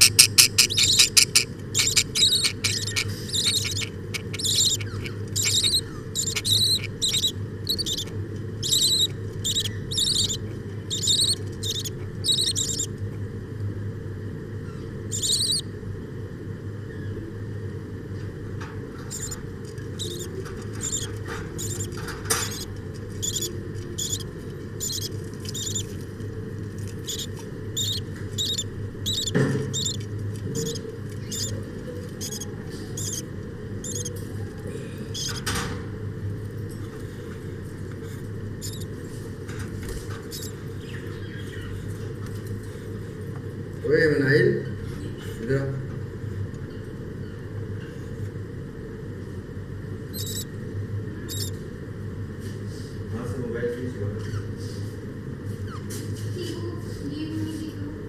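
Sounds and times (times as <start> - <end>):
parrots chirping: 0.0 - 13.0, 14.6 - 15.7, 19.1 - 26.0, 26.8 - 34.2, 35.1 - 35.5, 38.6 - 38.9, 40.2 - 41.8, 50.1 - 50.6, 51.2 - 51.6
low hum: 0.0 - 42.1.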